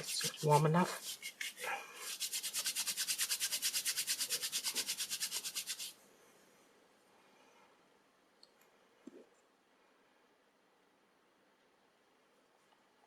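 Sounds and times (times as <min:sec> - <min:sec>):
palms rubbing quickly: 0:00.0 - 0:06.0.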